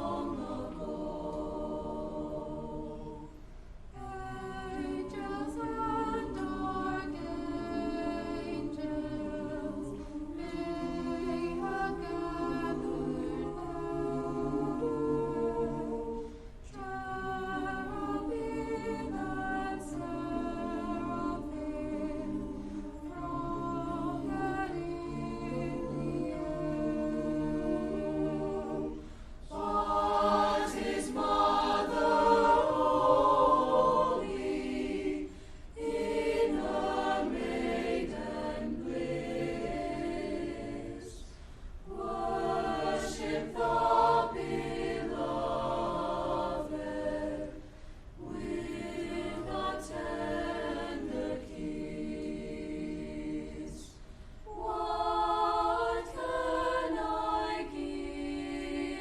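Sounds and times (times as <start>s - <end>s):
choir singing a cappella: 0.0s - 59.0s.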